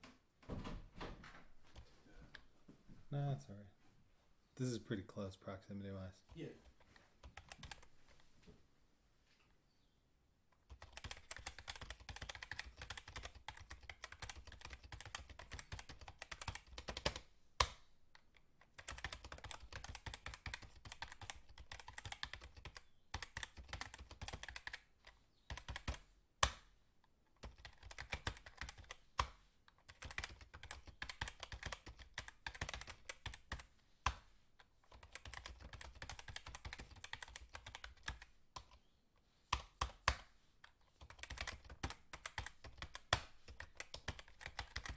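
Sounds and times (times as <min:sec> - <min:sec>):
fast typing on keyboard: 0:07.2 - 0:07.9, 0:10.6 - 0:17.3, 0:18.6 - 0:26.0, 0:27.4 - 0:33.7, 0:34.9 - 0:38.8, 0:41.0 - 0:44.9.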